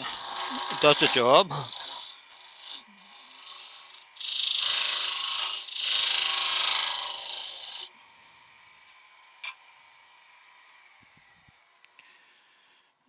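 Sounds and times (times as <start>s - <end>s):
lathe running: 0.0s - 7.9s.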